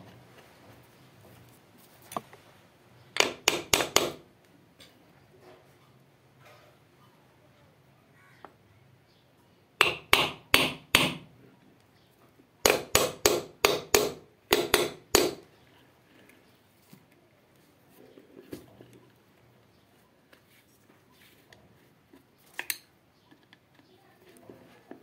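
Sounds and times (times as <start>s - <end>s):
hammer tapping on metal: 3.2s - 4.2s, 9.8s - 11.2s, 12.6s - 15.4s.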